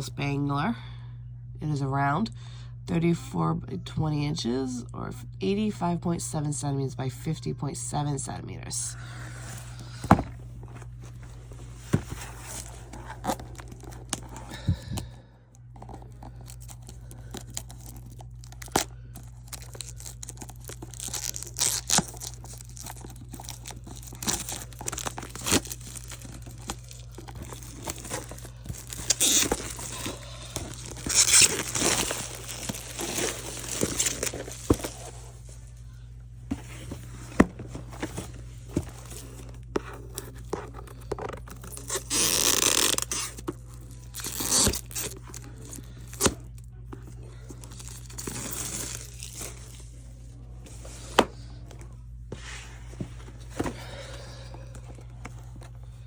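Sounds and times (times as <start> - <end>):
steady low hum: 0.0 - 56.0
plastic wrap and paper crinkling: 15.8 - 35.9, 36.7 - 51.0.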